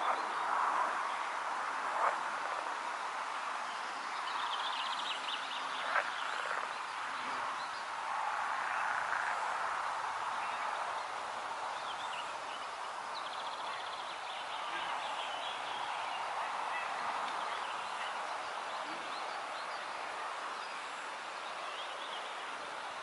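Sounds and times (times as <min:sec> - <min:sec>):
frog chorus: 0:00.0 - 0:02.8, 0:04.3 - 0:10.9.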